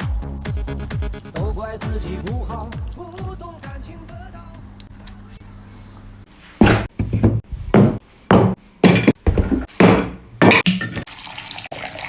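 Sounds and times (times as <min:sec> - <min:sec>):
background music: 0:00.0 - 0:04.8.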